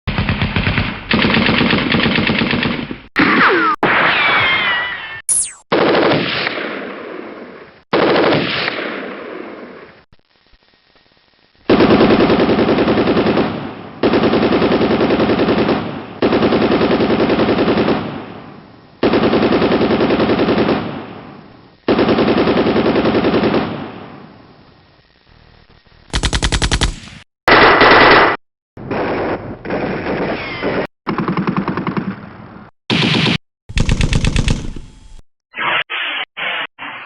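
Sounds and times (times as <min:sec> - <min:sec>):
machine gun bursts: 0:26.1 - 0:29.1, 0:32.9 - 0:35.0.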